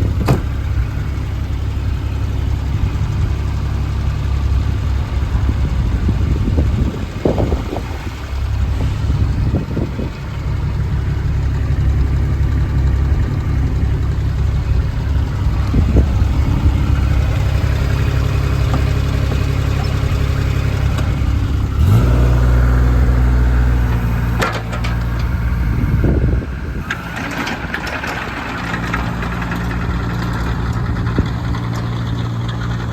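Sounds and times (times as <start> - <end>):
mini excavator diesel engine: 0.0 - 32.9
metal clanks: 23.8 - 25.4.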